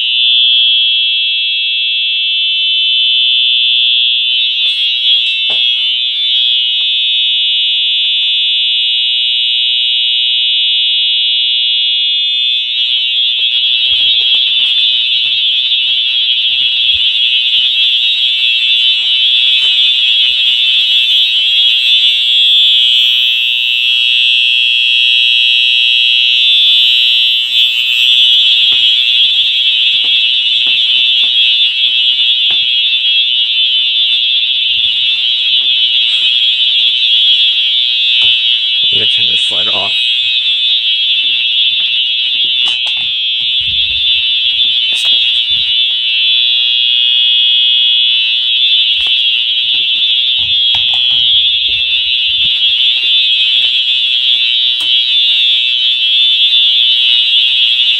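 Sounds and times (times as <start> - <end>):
fire alarm horn tone: 0.0 - 57.9.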